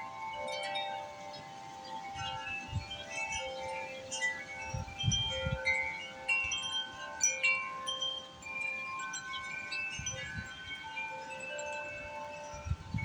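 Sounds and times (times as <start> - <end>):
wind chimes ringing: 0.0 - 13.0
wind gusts on microphone: 4.2 - 5.9, 9.4 - 13.0.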